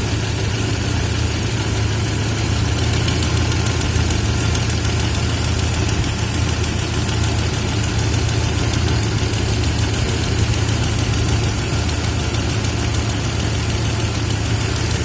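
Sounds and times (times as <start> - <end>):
engine idling with rapid knock: 0.0 - 15.0.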